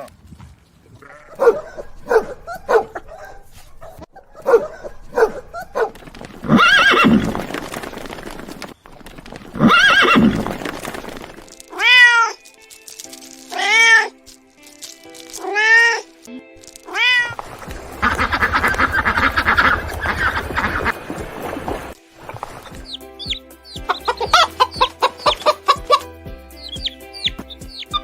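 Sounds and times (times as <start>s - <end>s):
faint background music: 1.0s - 28.0s
cat meowing: 11.7s - 12.4s, 13.6s - 14.1s, 16.9s - 17.4s.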